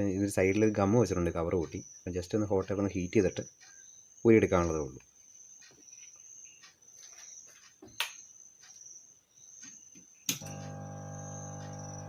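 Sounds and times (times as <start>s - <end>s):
cricket chirping: 0.0s - 12.0s
hot air gun blower humming: 10.4s - 12.0s.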